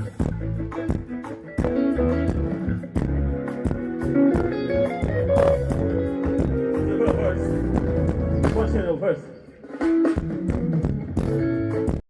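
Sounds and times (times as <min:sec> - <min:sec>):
bass guitar: 0:00.0 - 0:09.0, 0:09.8 - 0:12.0
guitar: 0:00.0 - 0:12.0
drum hits: 0:00.2 - 0:09.0.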